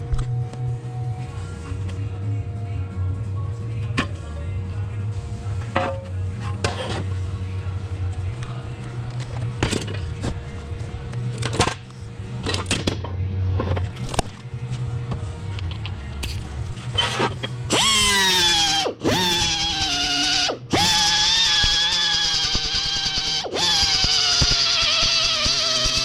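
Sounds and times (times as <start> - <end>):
low hum: 0.0 - 20.8
power tool whining into metal: 17.0 - 26.0.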